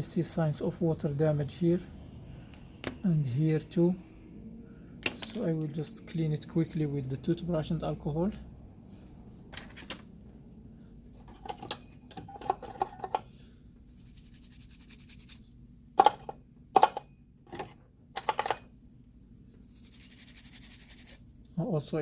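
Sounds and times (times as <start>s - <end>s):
tools clicking and tapping: 16.0s - 18.6s.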